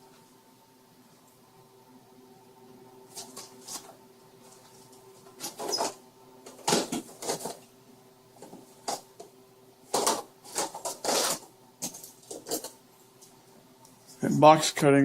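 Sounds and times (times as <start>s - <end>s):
faint steady hum: 0.0s - 15.0s
tools rustling and clacking: 9.9s - 12.8s.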